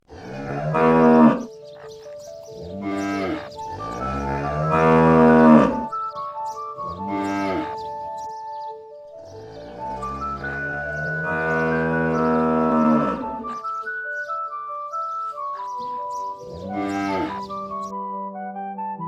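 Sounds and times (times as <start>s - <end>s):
cattle mooing: 0.0s - 1.5s, 2.6s - 6.0s, 6.8s - 7.9s, 9.3s - 13.7s, 16.5s - 17.5s
soft background music: 0.1s - 19.0s.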